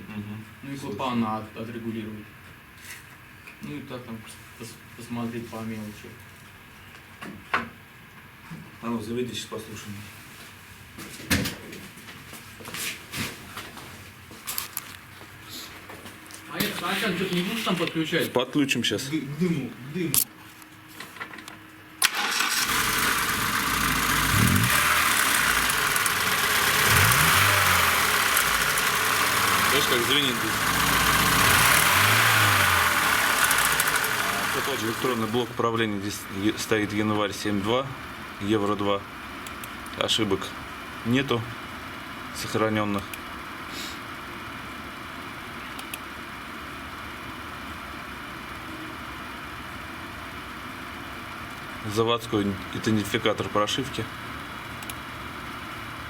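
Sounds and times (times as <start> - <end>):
car engine idling: 22.1 - 36.9.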